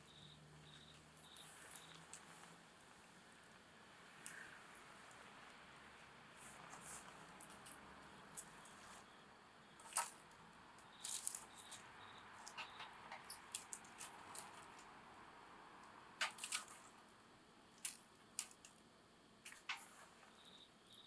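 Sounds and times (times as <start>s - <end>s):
soft hiss of burning: 0.9s - 12.4s.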